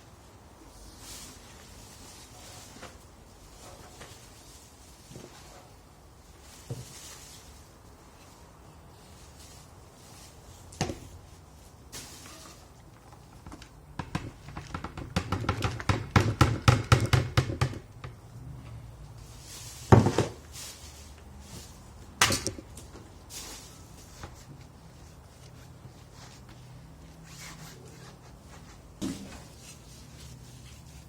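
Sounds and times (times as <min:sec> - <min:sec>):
thuds and knocks: 0:13.9 - 0:18.2.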